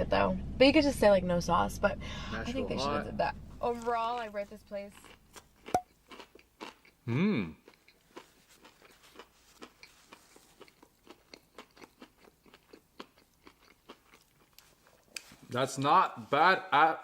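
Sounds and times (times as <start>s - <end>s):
person chewing food: 4.9s - 15.4s
person humming: 7.1s - 7.6s.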